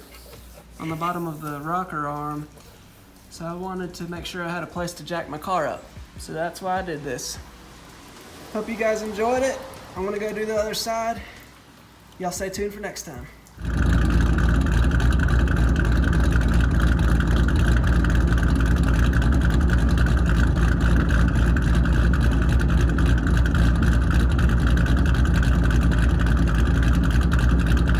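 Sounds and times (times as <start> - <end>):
car engine idling: 13.6 - 27.9.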